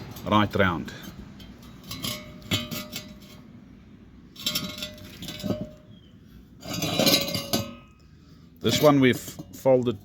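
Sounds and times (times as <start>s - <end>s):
steel parts clinking: 0.0s - 3.5s, 4.3s - 5.9s, 6.6s - 8.0s.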